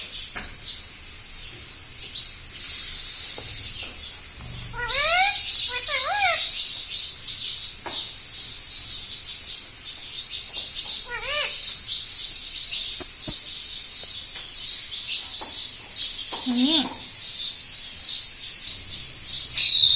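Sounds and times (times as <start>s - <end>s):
parrot chirping: 3.6s - 7.2s, 10.8s - 13.5s, 18.0s - 19.9s
parrot speech-like call: 4.7s - 6.5s, 11.0s - 11.7s, 16.4s - 17.1s.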